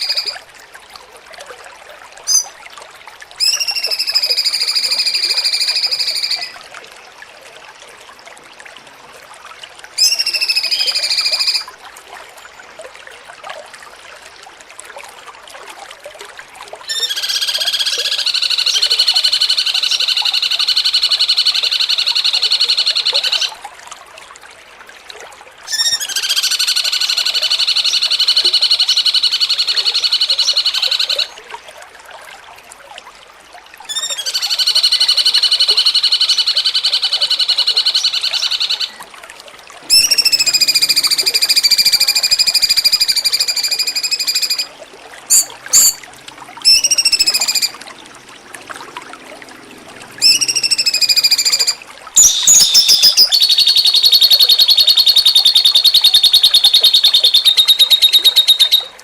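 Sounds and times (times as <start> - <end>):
bird singing buzzy trills: 45.3 - 46.0, 46.6 - 47.7, 50.2 - 59.0.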